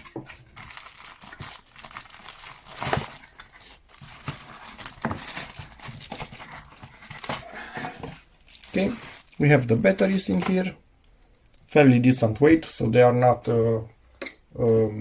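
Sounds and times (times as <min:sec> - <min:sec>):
packaging crinkling and rustling: 0:00.0 - 0:10.7.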